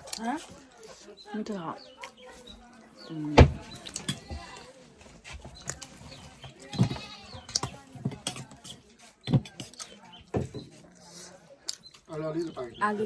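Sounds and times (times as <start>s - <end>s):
dull thump: 3.4s - 3.7s.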